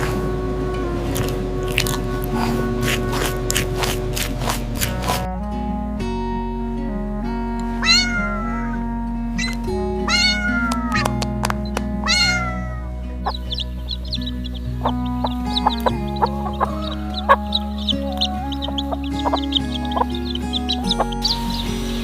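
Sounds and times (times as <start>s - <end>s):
background music: 0.0s - 22.0s
cat meowing: 7.8s - 8.8s, 9.4s - 11.2s, 12.0s - 15.0s.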